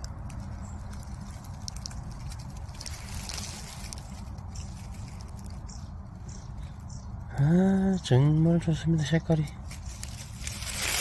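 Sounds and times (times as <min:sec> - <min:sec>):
faint ticks and rustles: 0:00.0 - 0:07.4
low steady outdoor rumble: 0:00.0 - 0:11.0.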